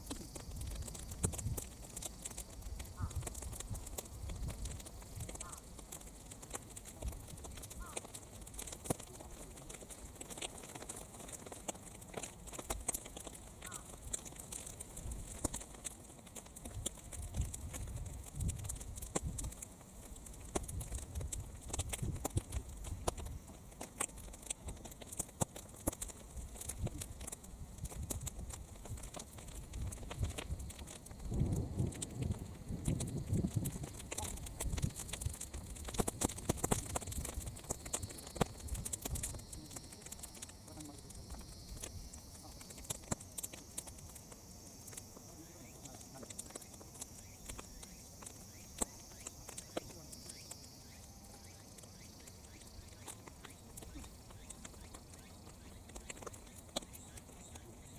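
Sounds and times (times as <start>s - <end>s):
fire crackling and popping: 0.0s - 57.9s
wind rumble: 26.3s - 44.3s.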